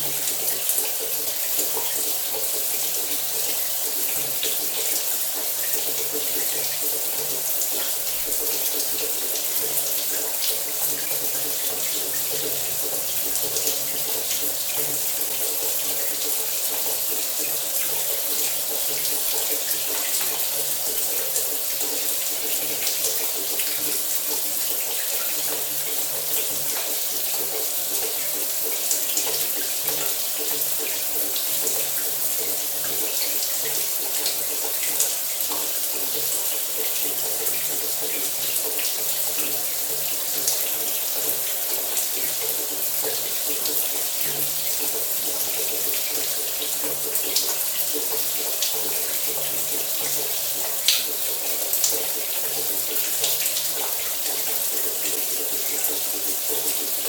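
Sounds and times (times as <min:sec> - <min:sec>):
shower running: 0:00.0 - 0:57.0.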